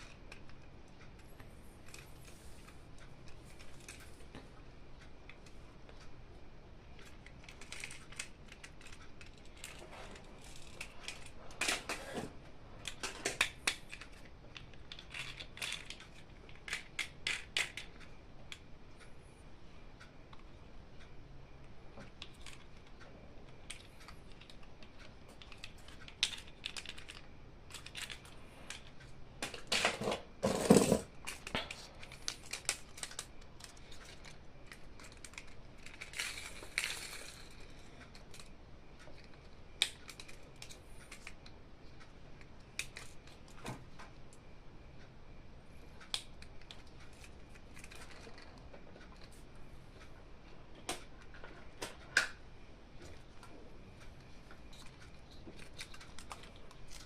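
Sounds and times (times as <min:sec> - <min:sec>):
toy parts clicking and tapping: 0:00.0 - 0:04.4, 0:07.0 - 0:18.6, 0:22.0 - 0:44.4, 0:46.0 - 0:49.4, 0:54.0 - 0:57.0.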